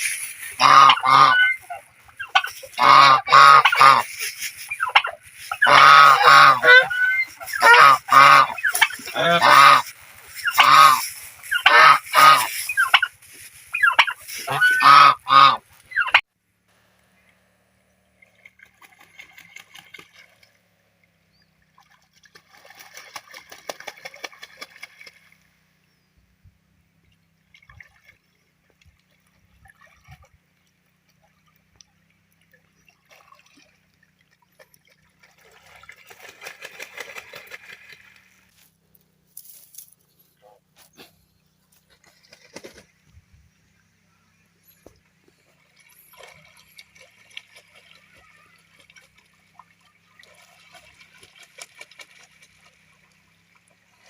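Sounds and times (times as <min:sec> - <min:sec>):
geese honking: 0:00.4 - 0:16.2.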